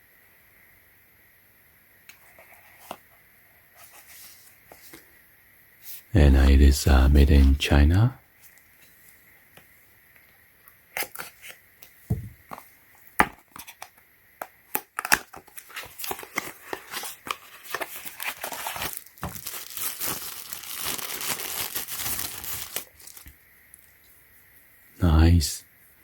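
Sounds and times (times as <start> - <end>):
packaging crinkling and tearing: 10.9 - 11.6, 14.7 - 23.8.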